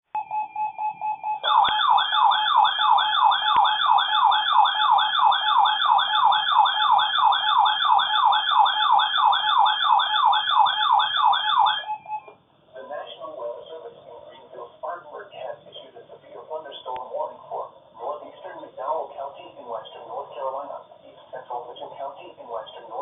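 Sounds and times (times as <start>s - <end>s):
steady high tone: 0.1s - 15.2s
electronic siren yelping: 0.2s - 12.4s.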